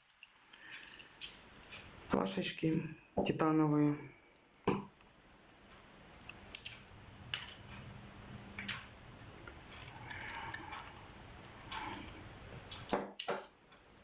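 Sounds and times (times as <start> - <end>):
small metal parts clinking: 0.0 - 1.9, 5.7 - 7.7, 8.7 - 10.9.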